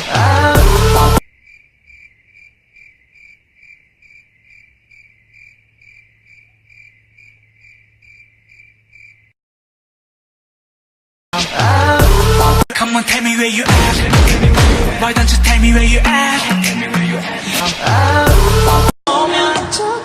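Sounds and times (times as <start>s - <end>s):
cricket chirping: 1.2s - 9.4s
loud burst of music: 13.6s - 18.9s.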